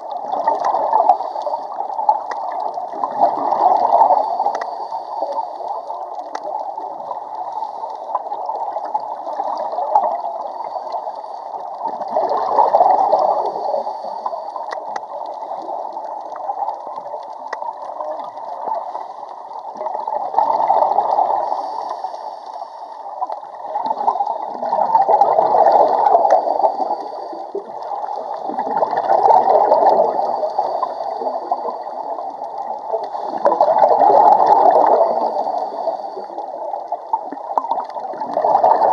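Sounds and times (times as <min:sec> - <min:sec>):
underwater bubbling and gurgling: 0:00.0 - 0:38.9.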